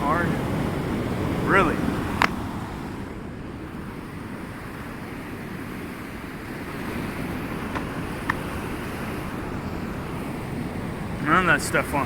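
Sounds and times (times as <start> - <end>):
waterfall roaring: 0.0 - 2.8, 5.2 - 12.0.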